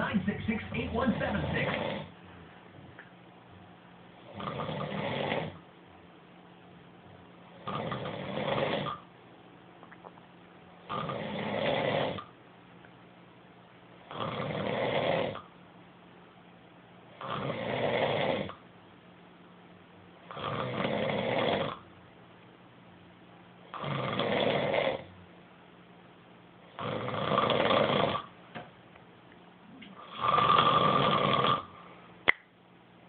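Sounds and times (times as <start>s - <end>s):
person snoring: 0.0s - 2.2s, 4.2s - 5.6s, 7.5s - 9.0s, 10.9s - 12.3s, 14.1s - 15.5s, 17.2s - 18.6s, 20.3s - 21.8s, 23.7s - 25.1s, 26.8s - 28.3s, 30.0s - 31.8s
faint steady hum: 0.0s - 33.0s.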